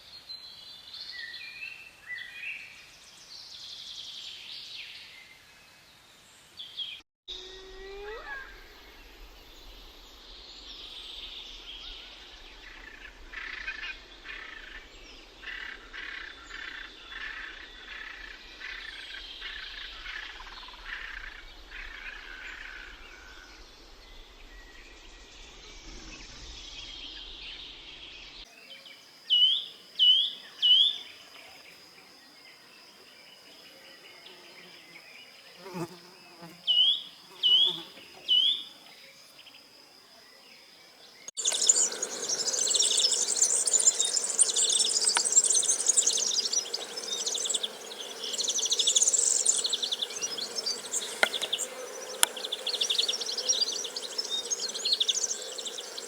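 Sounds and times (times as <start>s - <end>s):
birds chirping and twittering: 7.8s - 56.0s
high insect buzz: 28.8s - 39.7s, 41.1s - 56.0s.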